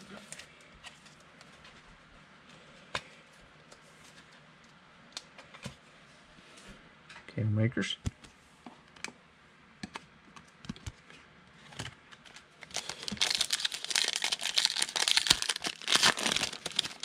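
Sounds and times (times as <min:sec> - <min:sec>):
foil wrapper tearing and crinkling: 0:12.3 - 0:17.0.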